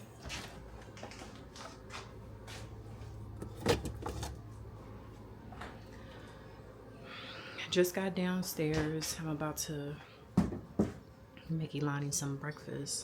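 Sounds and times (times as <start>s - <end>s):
household handling clicks and knocks: 3.4s - 4.4s.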